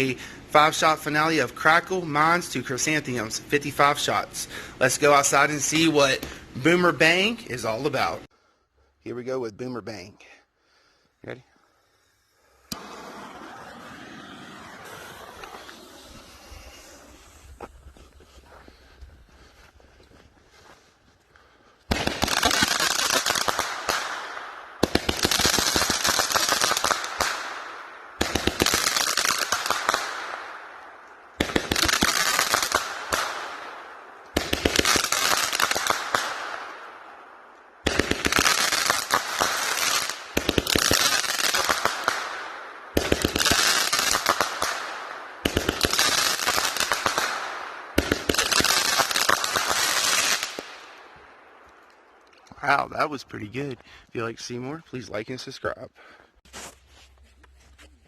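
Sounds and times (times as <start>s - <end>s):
firework crackling volleys: 11.8s - 18.0s, 21.8s - 51.2s.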